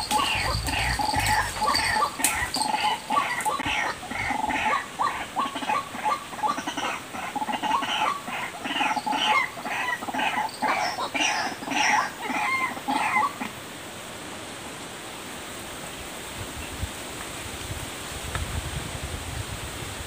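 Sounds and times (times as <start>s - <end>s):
waterhen calling harsh notes: 0.0s - 13.5s
steady hiss: 0.0s - 20.0s.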